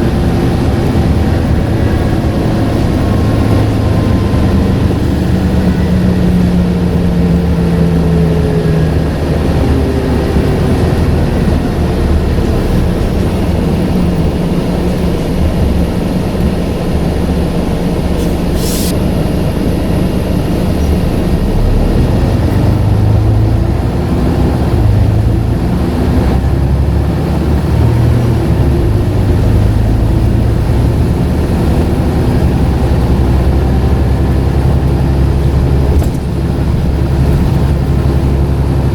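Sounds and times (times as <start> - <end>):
bus engine driving: 0.0 - 38.9
short air hiss: 18.2 - 19.0.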